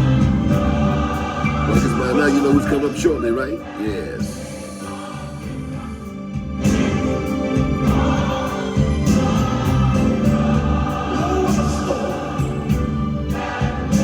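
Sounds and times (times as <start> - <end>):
band with drums: 0.0 - 14.0
choir singing gospel: 0.0 - 14.0.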